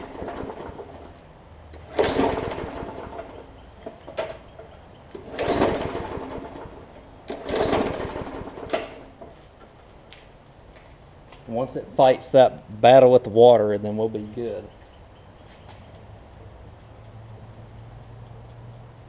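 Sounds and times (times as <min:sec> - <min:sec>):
lawn mower engine pull-started: 0:00.0 - 0:09.4.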